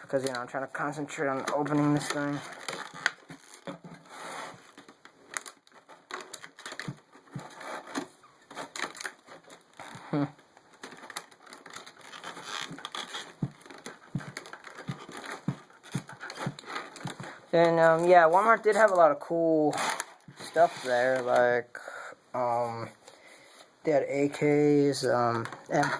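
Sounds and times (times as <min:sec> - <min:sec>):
packaging crinkling: 0:01.1 - 0:19.0.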